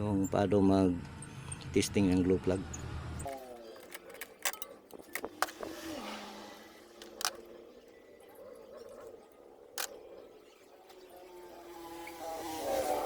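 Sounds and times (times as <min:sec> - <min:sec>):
hand tools clicking: 0:03.3 - 0:05.8, 0:07.0 - 0:07.5.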